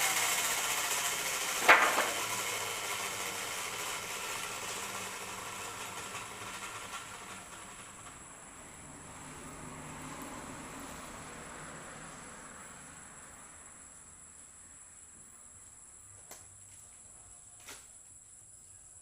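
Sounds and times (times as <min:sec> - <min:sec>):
circular saw whirring down: 0:00.0 - 0:11.1.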